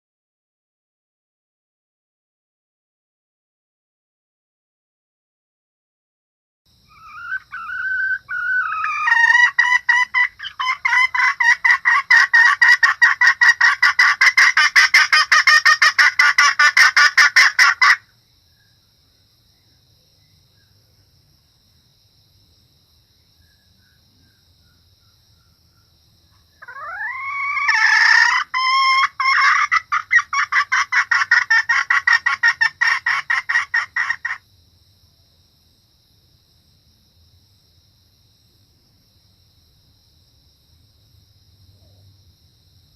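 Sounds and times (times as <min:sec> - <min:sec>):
hen clucking: 0:06.9 - 0:18.0, 0:26.6 - 0:34.4.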